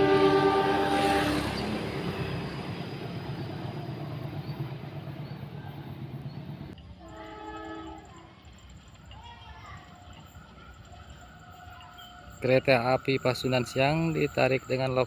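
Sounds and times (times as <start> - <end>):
locomotive horn chord: 0.0 - 2.1, 7.0 - 8.2
passing train rumble: 0.0 - 15.0.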